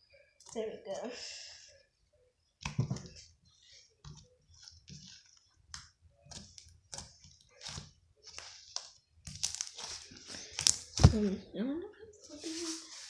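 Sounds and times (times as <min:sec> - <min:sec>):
slime crackling and popping: 0:05.7 - 0:11.2.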